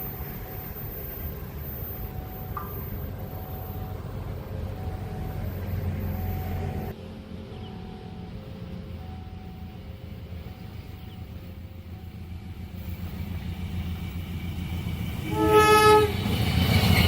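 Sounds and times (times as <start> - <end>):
train rumbling: 0.0 - 17.0
two-tone crossing alarm beeps: 0.8 - 6.9
train horn blast: 15.2 - 16.4.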